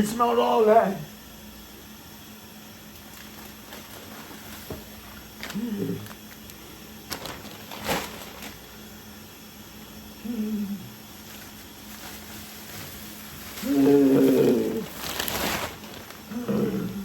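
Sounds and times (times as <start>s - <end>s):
refrigerator low hum: 0.0s - 17.0s
food containers knocking and rustling: 3.0s - 8.7s.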